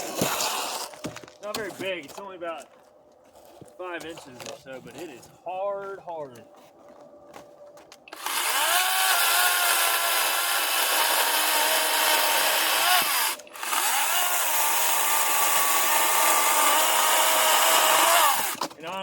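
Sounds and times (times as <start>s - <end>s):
electric chainsaw cutting log: 8.1s - 18.7s.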